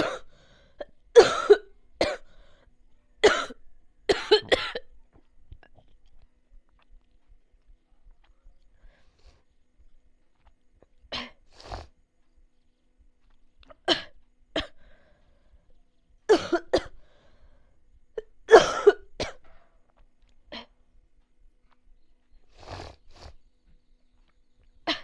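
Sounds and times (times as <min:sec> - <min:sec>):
person coughing: 0:00.0 - 0:00.3, 0:01.2 - 0:02.3, 0:03.2 - 0:04.9, 0:16.3 - 0:17.0, 0:18.5 - 0:19.4.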